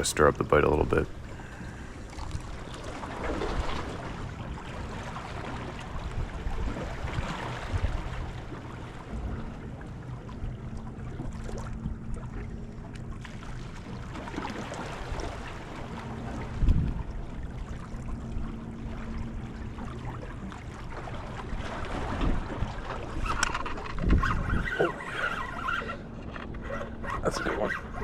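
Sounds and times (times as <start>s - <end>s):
low hum: 0.0s - 28.0s
wind buffeting microphone: 16.3s - 17.6s, 21.5s - 25.0s.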